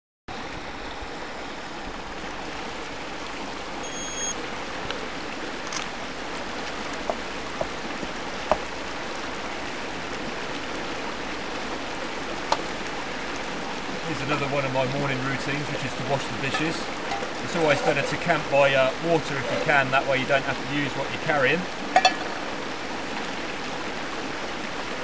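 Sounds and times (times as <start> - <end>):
river water rushing: 0.3 - 25.0
brief beep: 3.8 - 4.4
short plinks: 16.4 - 18.1, 21.9 - 22.4.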